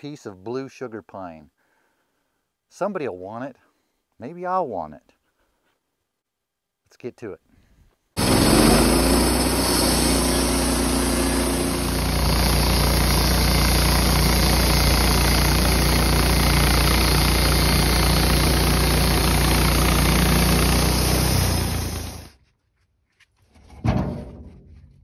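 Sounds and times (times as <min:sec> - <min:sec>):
bandsaw mill sawing a log: 0:08.2 - 0:22.4.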